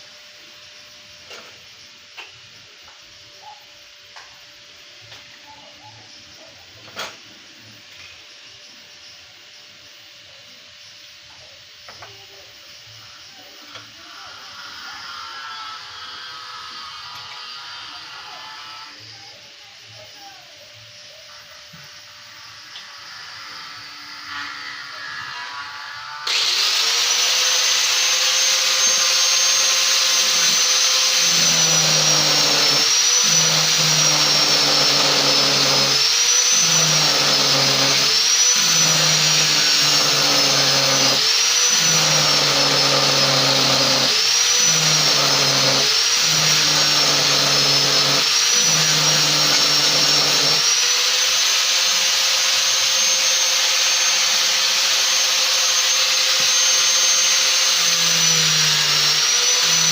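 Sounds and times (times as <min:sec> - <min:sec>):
angle grinder grinding metal: 0:13.1 - 0:20.2, 0:20.8 - 0:59.9.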